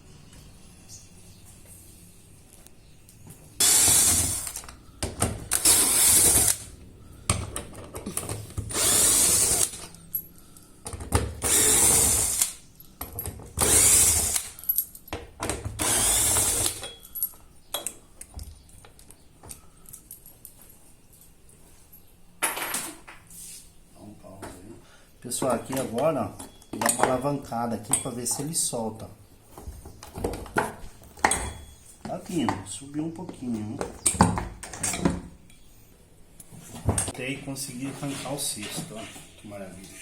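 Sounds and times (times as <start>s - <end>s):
cordless drill running: 3.6s - 4.6s, 5.5s - 6.7s, 8.7s - 9.8s, 11.4s - 12.6s, 13.6s - 14.5s, 15.8s - 16.8s.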